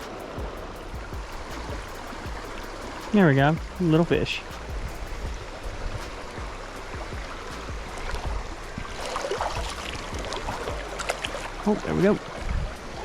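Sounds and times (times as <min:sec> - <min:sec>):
river water rushing: 0:00.0 - 0:13.0
low bumps and knocks: 0:03.2 - 0:11.3.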